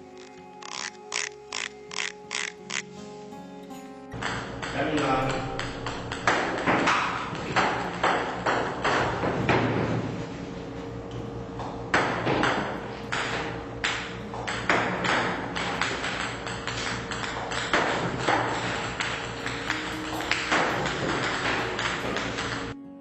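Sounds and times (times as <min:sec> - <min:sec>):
sharp ringing knocks: 0:04.2 - 0:10.0, 0:11.2 - 0:22.8
low hum: 0:04.2 - 0:23.0.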